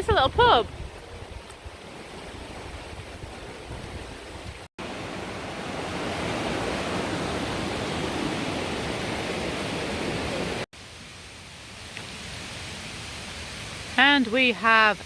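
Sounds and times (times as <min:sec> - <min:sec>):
waterfall rushing: 0:04.8 - 0:10.7.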